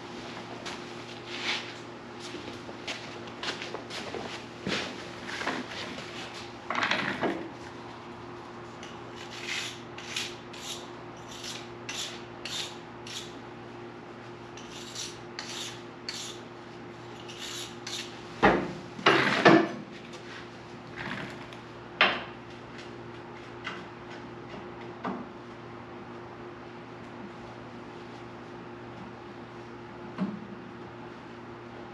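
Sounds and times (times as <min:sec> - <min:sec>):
scraping strokes on metal: 0:09.2 - 0:13.4, 0:14.6 - 0:16.4, 0:17.2 - 0:18.1.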